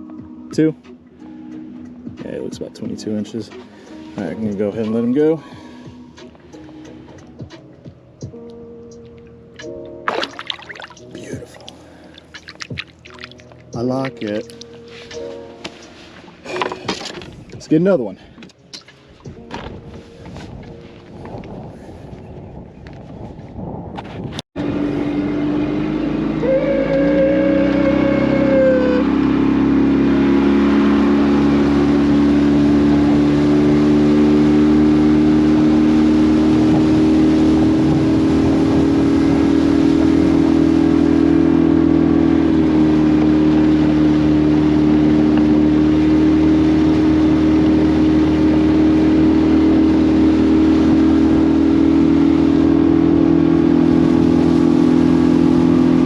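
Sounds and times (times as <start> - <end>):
outboard motor running: 24.6 - 56.0.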